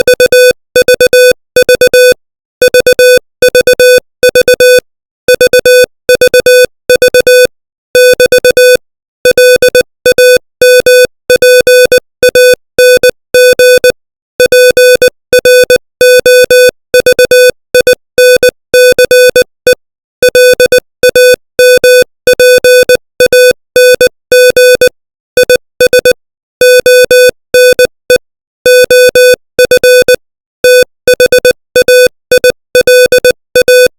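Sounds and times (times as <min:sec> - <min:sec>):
morse code beeps: 0:00.0 - 0:33.9.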